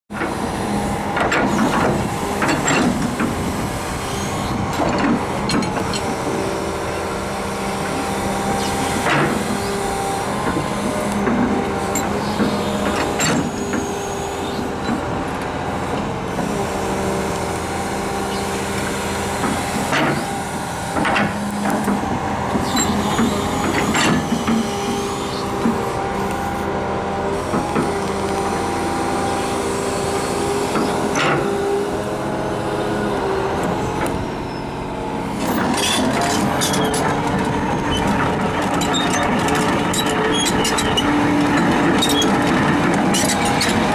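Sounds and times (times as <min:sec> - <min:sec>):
excavator diesel engine running: 0:00.1 - 0:43.9
brief squeaks: 0:22.6 - 0:23.4.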